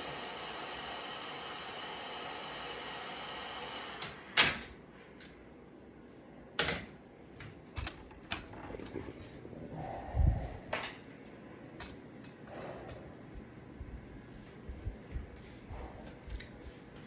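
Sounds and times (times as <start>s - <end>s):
heat gun hissing: 0.0s - 4.1s.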